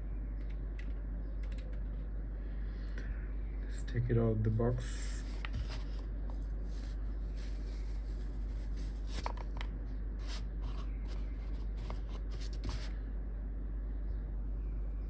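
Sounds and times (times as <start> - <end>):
steady low hum: 0.0 - 15.0
packaging rustling: 5.2 - 12.9.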